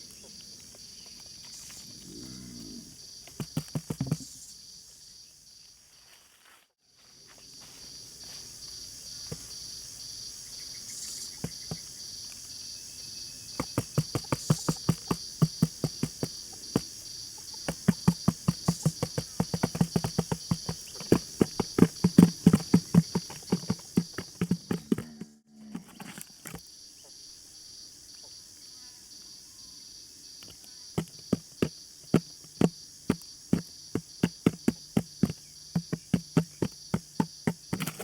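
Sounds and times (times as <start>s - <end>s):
insects chirring: 0.0s - 38.0s
quick run of taps: 3.2s - 4.3s, 11.4s - 11.9s, 13.6s - 25.2s, 31.0s - 38.0s.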